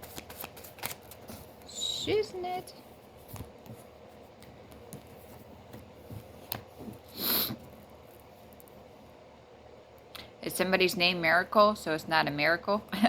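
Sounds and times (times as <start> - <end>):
cards tapping and rustling: 0.0 - 1.7.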